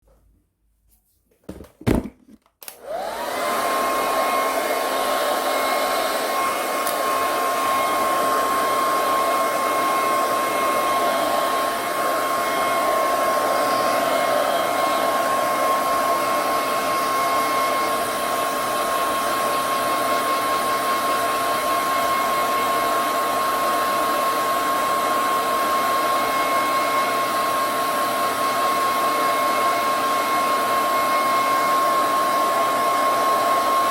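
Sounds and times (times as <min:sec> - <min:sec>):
hair dryer blowing: 0:01.8 - 0:33.9
hair dryer clicks: 0:02.0 - 0:15.6.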